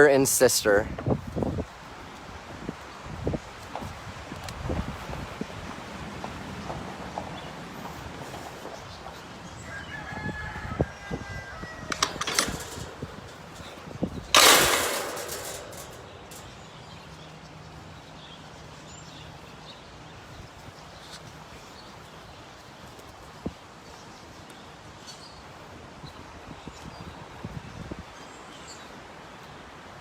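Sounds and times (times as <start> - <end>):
faint rooster crowing: 9.4 - 12.7.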